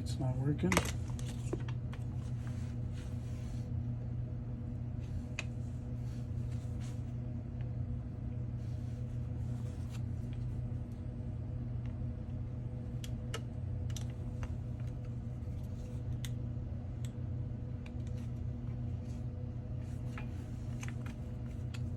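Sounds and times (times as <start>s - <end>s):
low electrical hum: 0.0s - 21.9s.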